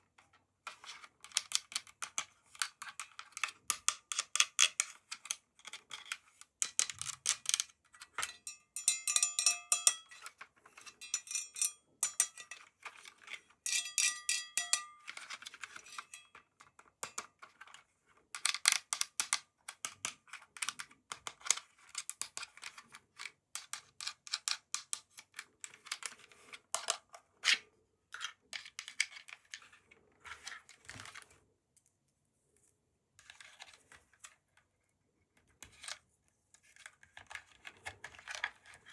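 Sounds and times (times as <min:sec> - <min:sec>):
toy parts clattering: 0:01.2 - 0:16.4
ringing clinks: 0:08.4 - 0:10.2, 0:11.0 - 0:12.6, 0:13.7 - 0:15.0.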